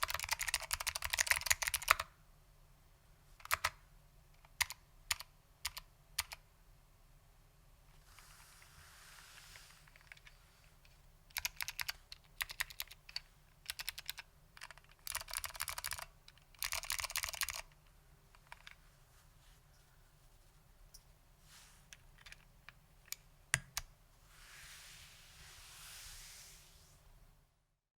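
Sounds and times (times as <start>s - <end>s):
clicky mechanical keyboard typing: 0.0s - 2.1s, 3.4s - 3.8s, 4.4s - 6.4s, 11.3s - 17.8s, 18.4s - 18.8s.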